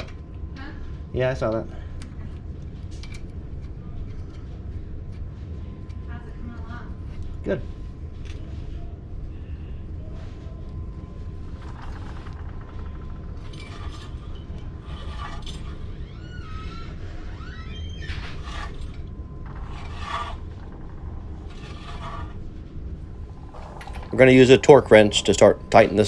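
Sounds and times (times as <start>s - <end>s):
steady low rumble: 20.4s - 26.0s
metal tools clinking and scraping: 23.4s - 26.0s.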